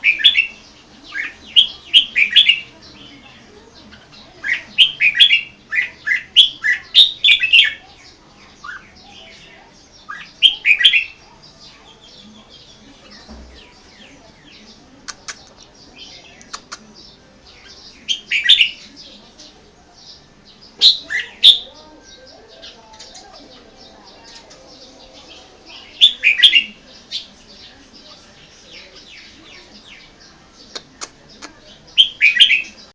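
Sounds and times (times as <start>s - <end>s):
bulbul singing: 0.0s - 32.9s
faint bird chirping: 0.0s - 32.9s.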